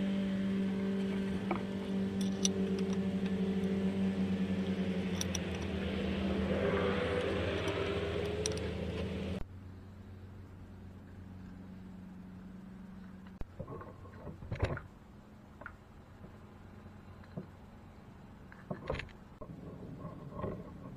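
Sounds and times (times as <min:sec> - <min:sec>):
steady machine hum: 0:00.0 - 0:20.9.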